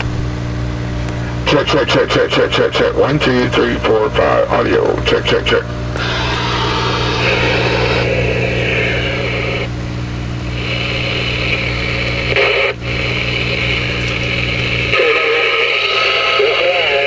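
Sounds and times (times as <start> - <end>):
steady low hum: 0.0 - 17.0
radio static hiss: 1.2 - 17.0.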